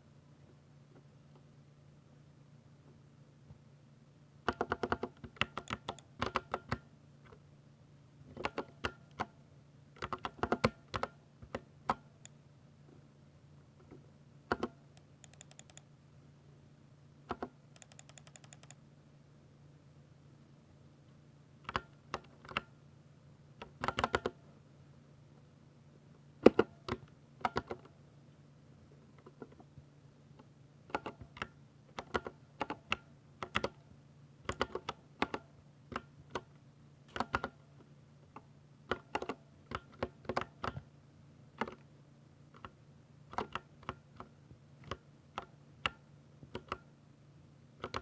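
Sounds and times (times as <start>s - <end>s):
mechanical keyboard keystrokes: 4.5s - 6.8s, 10.0s - 12.0s, 14.5s - 15.8s, 17.3s - 18.8s, 34.5s - 35.4s, 47.8s - 48.0s.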